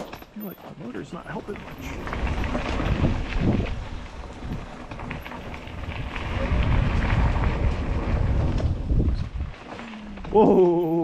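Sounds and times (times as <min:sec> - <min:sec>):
mountain bike rattling on trail: 0:00.0 - 0:11.0
wind buffeting microphone: 0:01.4 - 0:11.0.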